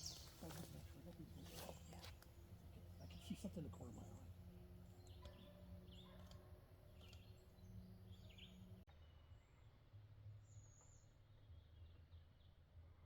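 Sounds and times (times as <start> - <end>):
distant bird chirps: 0.0 - 0.7.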